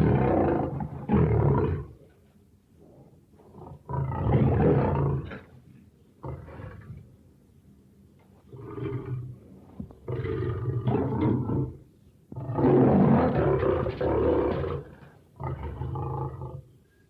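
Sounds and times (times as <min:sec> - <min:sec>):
lion roaring: 0:00.0 - 0:02.0, 0:03.5 - 0:05.5, 0:08.5 - 0:09.4, 0:10.0 - 0:16.7.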